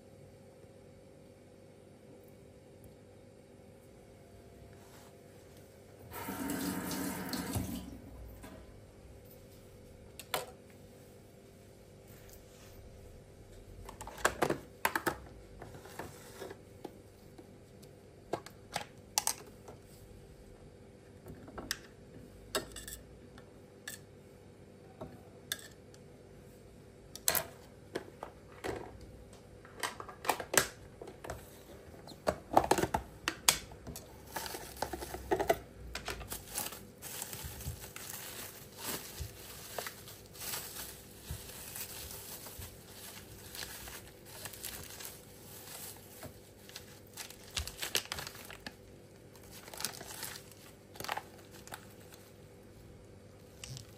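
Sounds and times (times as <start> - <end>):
rustling: 36.3 - 48.7.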